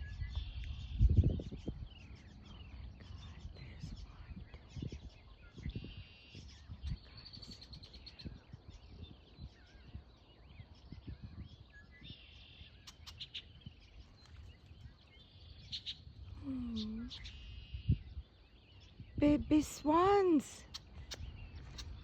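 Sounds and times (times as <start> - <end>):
small birds chirping and trilling: 0.0 - 22.0.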